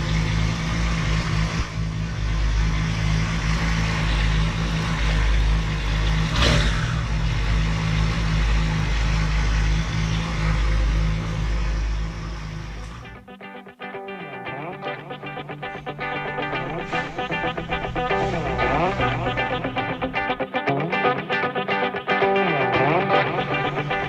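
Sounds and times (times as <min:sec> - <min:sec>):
motorcycle engine running: 0:00.0 - 0:13.2, 0:16.0 - 0:20.4, 0:22.8 - 0:24.0
engine revving blip: 0:06.0 - 0:07.1, 0:14.8 - 0:24.0.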